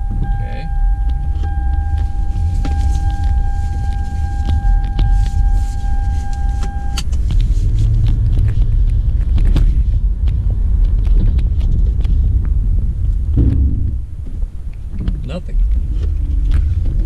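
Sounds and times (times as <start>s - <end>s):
steady high tone: 0.0s - 7.1s
car cabin road and engine rumble: 0.0s - 17.0s.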